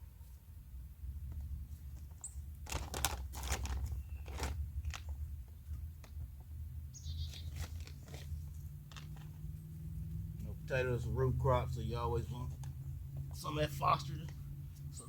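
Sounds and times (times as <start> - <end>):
soil crunching and scraping: 1.4 - 6.4, 7.0 - 9.7.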